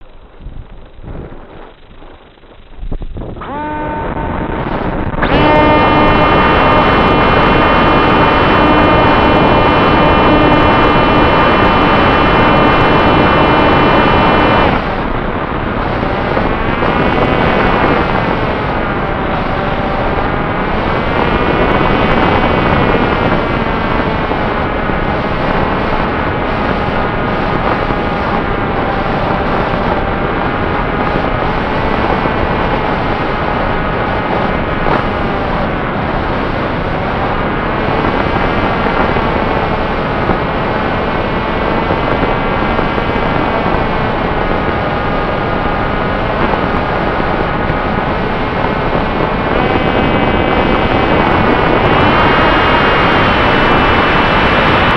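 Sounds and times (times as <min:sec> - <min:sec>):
wind noise on microphone: 0:00.0 - 0:54.9
model plane motor whine: 0:03.4 - 0:15.2.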